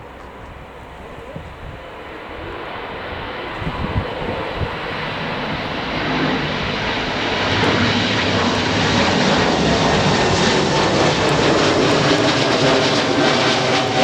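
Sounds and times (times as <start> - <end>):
aircraft engines running: 0.0 - 14.0.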